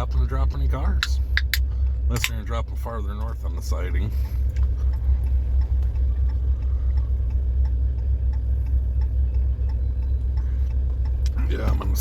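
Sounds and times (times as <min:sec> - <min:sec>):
low steady rumble: 0:00.0 - 0:12.0
hazard-light flasher ticking: 0:03.2 - 0:12.0.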